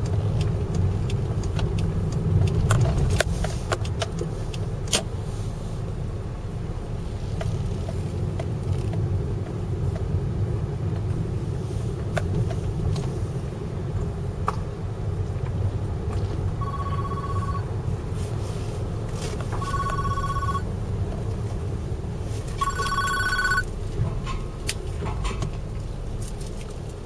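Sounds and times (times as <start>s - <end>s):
steady low rumble: 0.0s - 27.0s
phone ringing: 16.6s - 17.7s, 19.5s - 20.7s, 22.6s - 23.7s.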